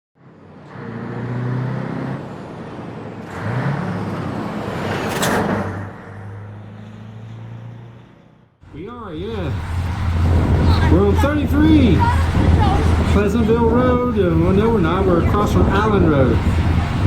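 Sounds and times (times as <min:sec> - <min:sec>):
vehicle engine running: 0:08.6 - 0:17.0.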